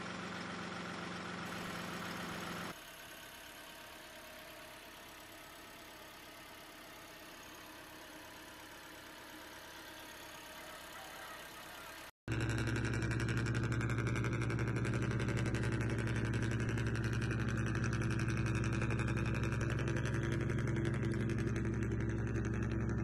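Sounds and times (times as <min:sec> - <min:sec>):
model vehicle engine running: 0:00.0 - 0:23.0.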